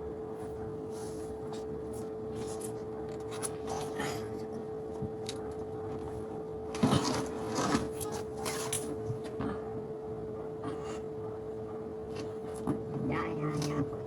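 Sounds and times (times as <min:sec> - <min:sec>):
steady hum: 0:00.0 - 0:14.0
rustling and scraping of handling: 0:00.4 - 0:04.3, 0:04.9 - 0:09.4.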